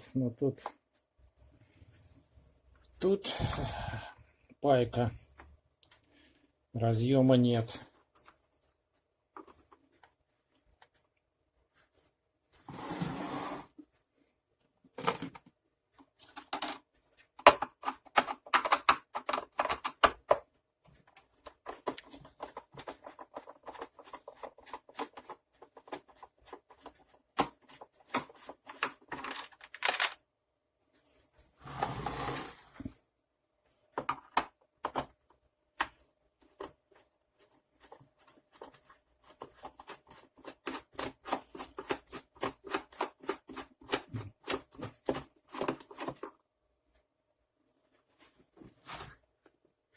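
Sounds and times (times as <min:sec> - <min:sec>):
screwdriver and plastic parts clicking: 0:15.0 - 0:20.4, 0:26.8 - 0:30.2.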